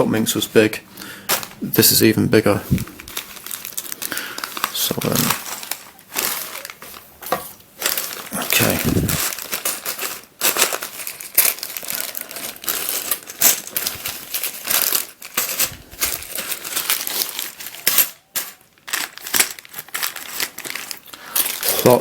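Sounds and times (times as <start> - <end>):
plastic bags crinkling: 0.3 - 22.0
plastic pieces clicking: 7.8 - 22.0.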